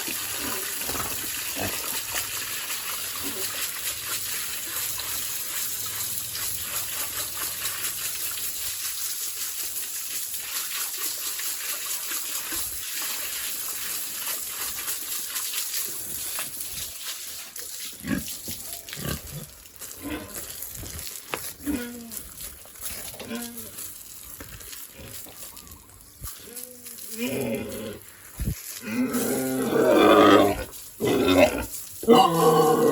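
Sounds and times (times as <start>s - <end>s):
water spray hissing: 0.0s - 32.9s
pigs grunting: 0.2s - 2.2s, 18.0s - 21.0s, 21.6s - 22.4s, 26.4s - 28.1s, 28.8s - 32.9s.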